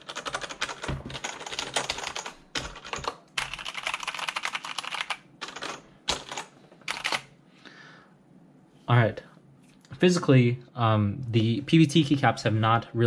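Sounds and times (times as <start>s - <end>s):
mechanical keyboard typing: 0.0s - 7.3s.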